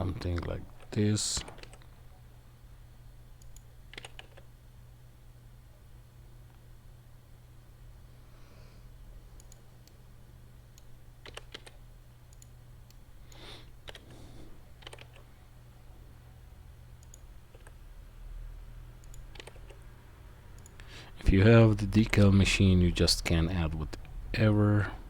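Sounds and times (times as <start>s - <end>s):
faint low hum: 0.0s - 25.0s
computer mouse and keyboard clicks: 0.2s - 2.0s, 3.4s - 4.5s, 9.4s - 10.0s, 10.8s - 14.2s, 14.8s - 15.3s, 17.0s - 17.8s, 19.0s - 19.8s, 20.6s - 20.8s.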